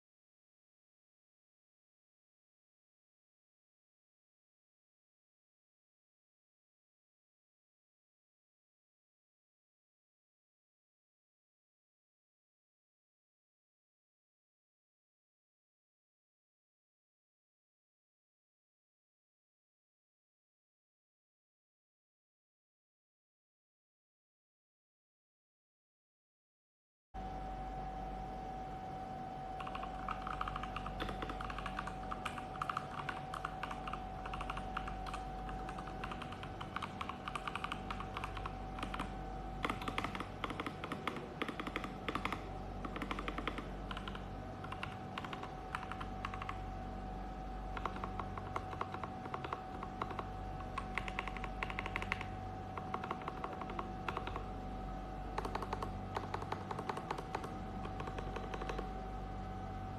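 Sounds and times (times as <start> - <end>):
low hum: 27.2 - 59.9
mechanical keyboard keystrokes: 29.6 - 46.6, 47.8 - 54.5, 55.4 - 58.9.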